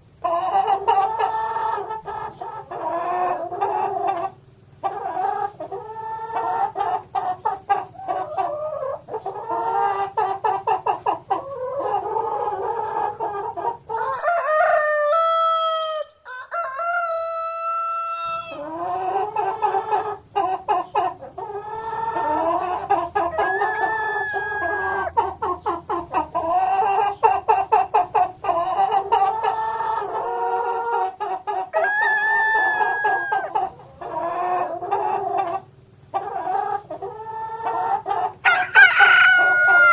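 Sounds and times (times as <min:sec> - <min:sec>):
chickens clucking: 0:00.0 - 0:39.9
rooster crowing: 0:14.0 - 0:18.6, 0:23.2 - 0:25.2, 0:31.7 - 0:33.6, 0:38.4 - 0:39.9.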